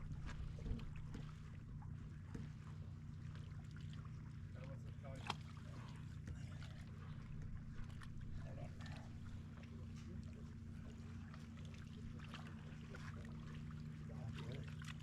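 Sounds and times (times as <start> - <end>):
low motor hum: 0.0 - 15.0.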